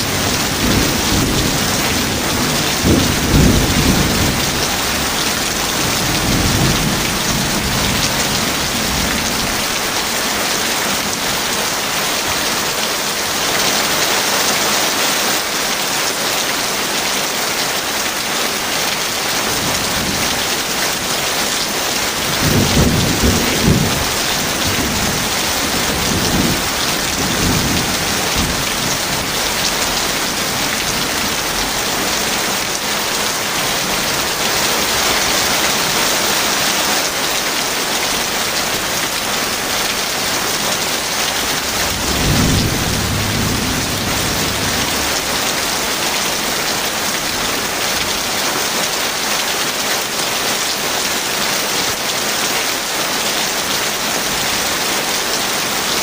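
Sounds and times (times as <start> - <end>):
thunder rumbling: 0.0 - 10.1, 19.2 - 35.8, 38.7 - 47.4
heavy rain falling: 0.0 - 56.0.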